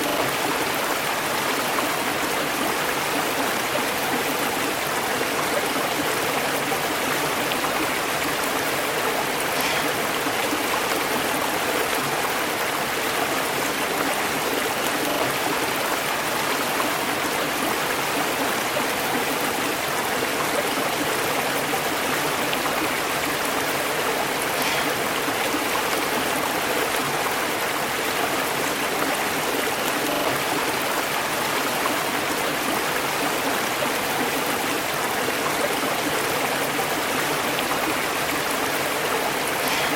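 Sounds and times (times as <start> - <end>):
river flowing over stones: 0.0 - 39.9.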